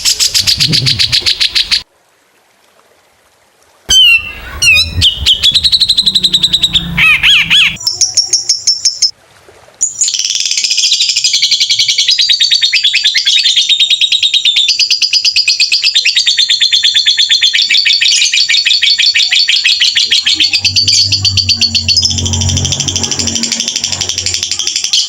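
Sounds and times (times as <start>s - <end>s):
songbirds rapid sharp calls: 0.0s - 1.8s, 3.9s - 8.8s
low hum: 3.9s - 7.8s, 20.1s - 24.7s.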